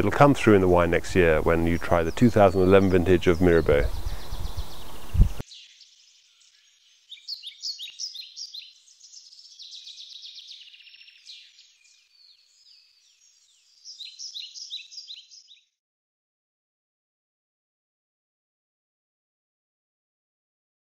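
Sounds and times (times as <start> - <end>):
birds chirping: 0.0 - 15.6.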